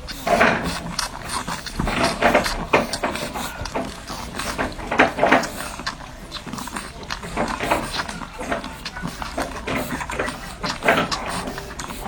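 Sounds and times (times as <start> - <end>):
puppies squeaking and grunting: 0.0 - 12.0
wet suckling noises: 0.0 - 12.0.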